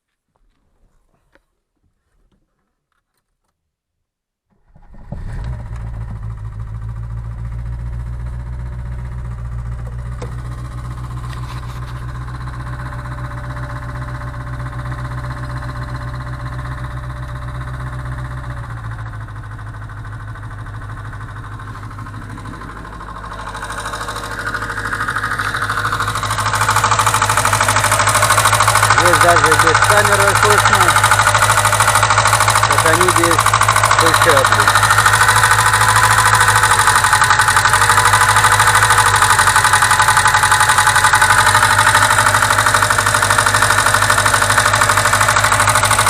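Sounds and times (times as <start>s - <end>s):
car engine starting and idling: 4.5s - 46.0s
valve train tapping: 9.7s - 11.4s, 21.5s - 46.0s.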